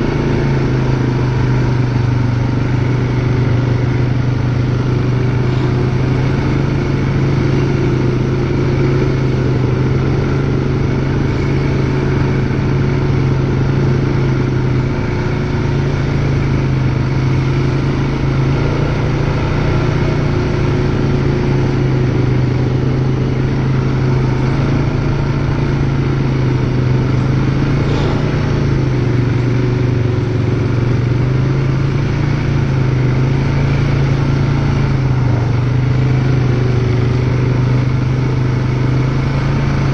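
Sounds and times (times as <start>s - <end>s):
atv engine running: 0.0s - 39.9s.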